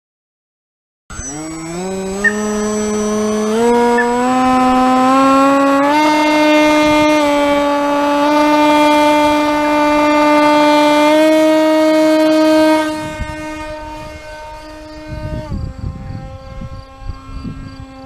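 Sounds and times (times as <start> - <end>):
buzzy electronic eagle call: 1.1 - 5.2, 12.2 - 18.0
short falling glide: 1.1 - 15.7.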